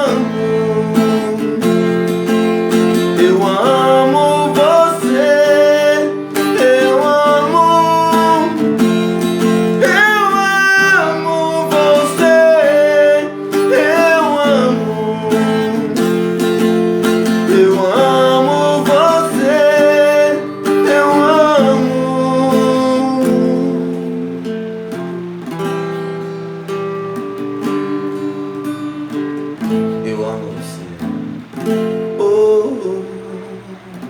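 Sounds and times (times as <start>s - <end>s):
acoustic guitar strummed: 0.0s - 34.0s
wordless sung melody: 0.0s - 34.0s.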